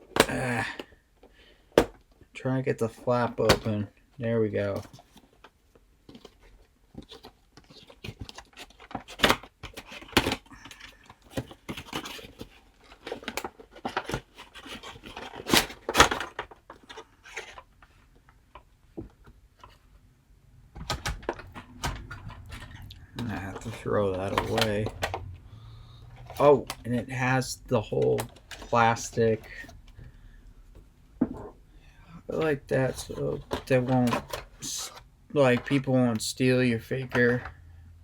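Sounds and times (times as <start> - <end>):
cardboard box crinkling: 6.1 - 17.8, 21.1 - 25.4.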